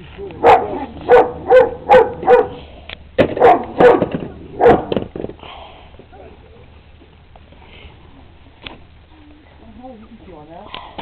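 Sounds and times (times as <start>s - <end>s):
dog barking: 0.4s - 2.6s, 3.4s - 4.9s.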